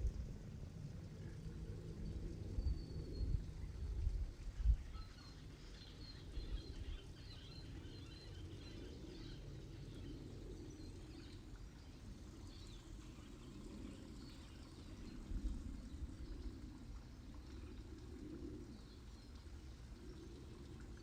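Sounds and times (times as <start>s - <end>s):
birds chirping and twittering: 2.6s - 20.8s
running water: 9.6s - 21.0s.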